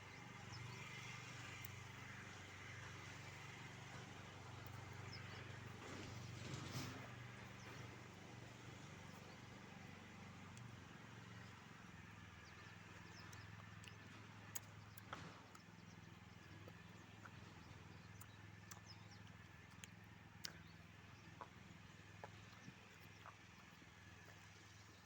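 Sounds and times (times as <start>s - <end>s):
faint clicks: 16.6s - 21.6s.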